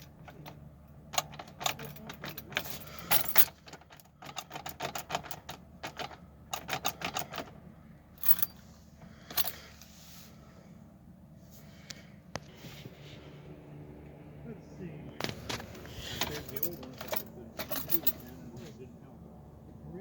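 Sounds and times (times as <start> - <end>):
small parts clicking and rattling: 0.0 - 7.6, 8.2 - 8.6, 9.2 - 9.8, 15.2 - 18.4.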